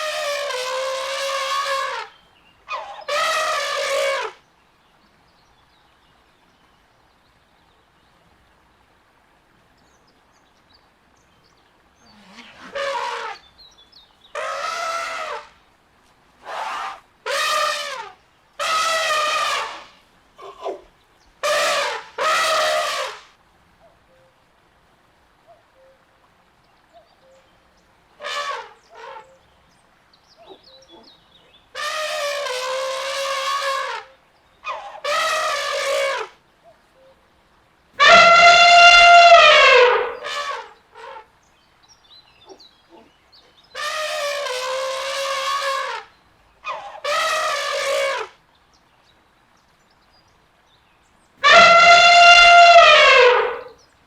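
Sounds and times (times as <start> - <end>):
elephants trumpeting: 0.0 - 4.4, 12.1 - 13.4, 14.4 - 15.5, 16.4 - 20.8, 21.4 - 23.3, 28.2 - 29.4, 31.8 - 36.3, 38.0 - 41.3, 43.8 - 48.3, 51.4 - 53.8.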